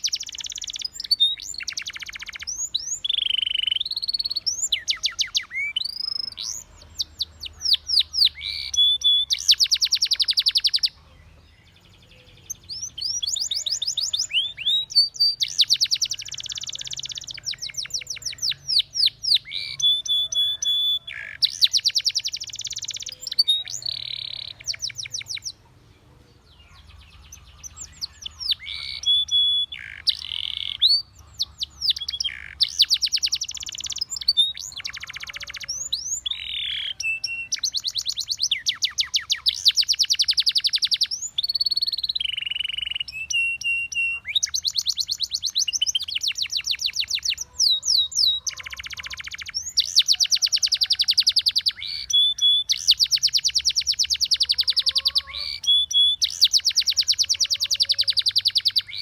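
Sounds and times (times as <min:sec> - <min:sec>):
canary singing trills and whistles: 0:00.0 - 0:25.7, 0:26.4 - 0:59.0.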